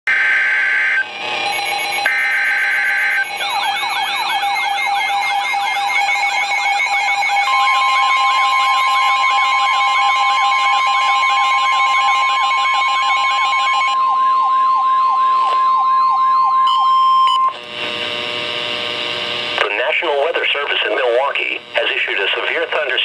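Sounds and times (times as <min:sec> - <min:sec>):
electronic siren-like warble: 0:00.1 - 0:17.6
steady alarm tone: 0:00.1 - 0:21.7.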